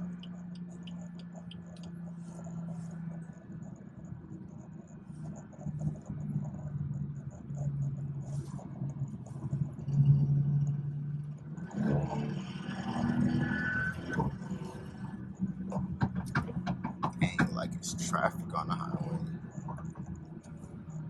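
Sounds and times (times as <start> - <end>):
car engine droning: 0.0 - 21.0
road noise inside car: 0.0 - 21.0.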